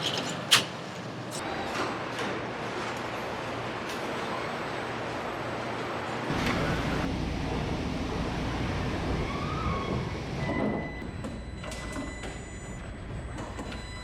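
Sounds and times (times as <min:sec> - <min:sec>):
machinery din with low rumble: 0:05.0 - 0:14.0.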